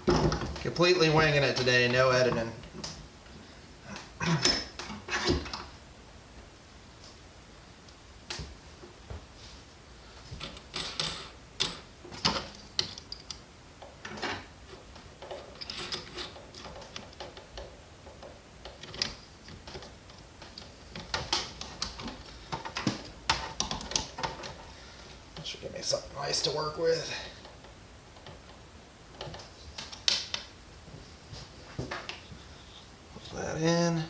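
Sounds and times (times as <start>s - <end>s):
hard parts clicking and rattling: 10.3s - 24.7s.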